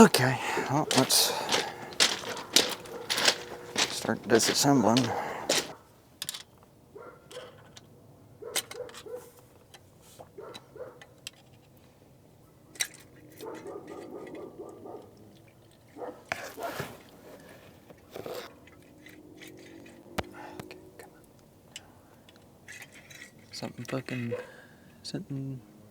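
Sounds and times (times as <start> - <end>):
tools and metal parts clinking: 0.0 - 6.6, 22.2 - 24.3
rustle and clatter: 0.0 - 6.7, 15.7 - 24.4.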